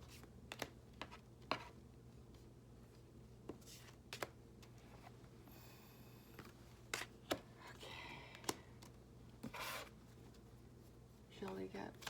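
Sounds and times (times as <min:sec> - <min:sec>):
cards clicking and tapping: 0:00.1 - 0:01.6, 0:08.3 - 0:09.6.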